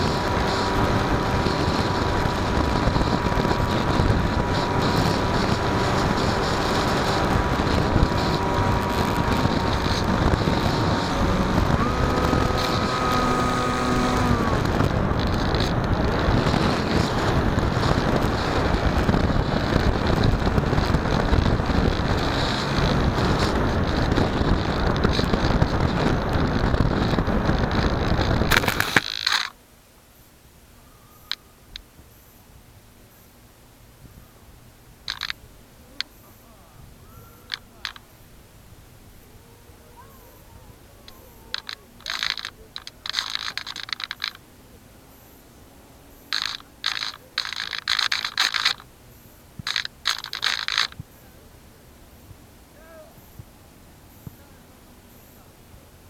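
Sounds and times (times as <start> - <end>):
wind rushing over microphone: 0.0 - 29.2
motor and propeller whining: 0.0 - 29.5, 39.2 - 49.0.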